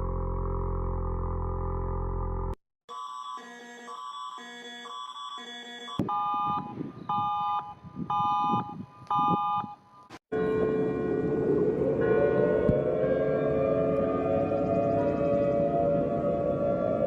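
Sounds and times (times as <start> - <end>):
alert beeps: 2.9 - 9.8.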